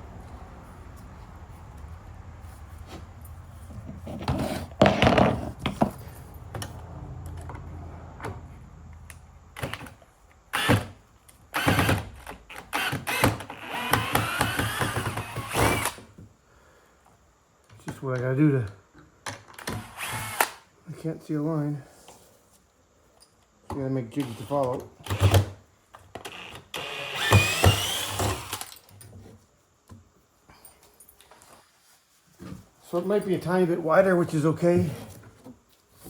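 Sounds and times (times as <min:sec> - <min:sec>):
wood and tools clattering: 0:03.7 - 0:06.8
handheld power tool whining: 0:09.6 - 0:16.0, 0:19.6 - 0:20.6, 0:24.2 - 0:25.6, 0:26.2 - 0:28.8.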